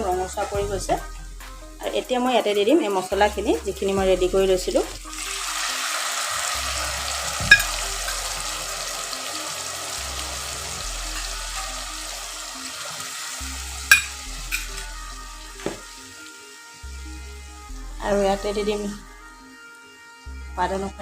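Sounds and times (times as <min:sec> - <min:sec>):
spice paste sizzling in oil: 0:04.5 - 0:18.5.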